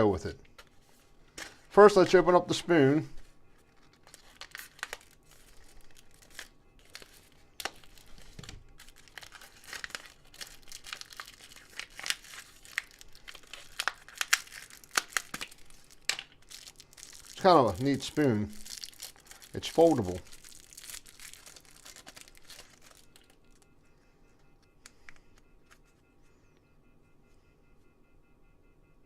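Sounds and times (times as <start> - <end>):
plastic wrapper tearing and crinkling: 3.6 - 23.6.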